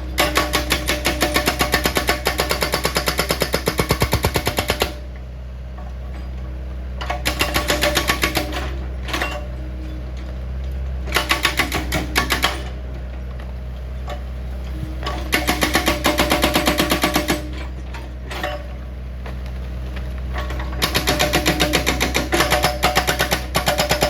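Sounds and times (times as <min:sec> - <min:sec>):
hydraulic breaker hammering rock: 0:00.2 - 0:05.1, 0:07.0 - 0:09.6, 0:11.0 - 0:12.8, 0:15.0 - 0:18.8, 0:20.3 - 0:24.0
low engine hum: 0:11.8 - 0:15.4.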